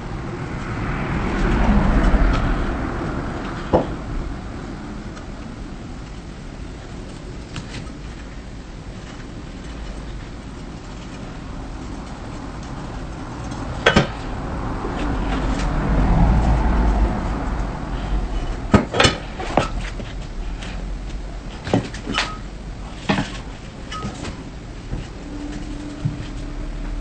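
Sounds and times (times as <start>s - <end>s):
background noise rush: 0.0s - 27.0s.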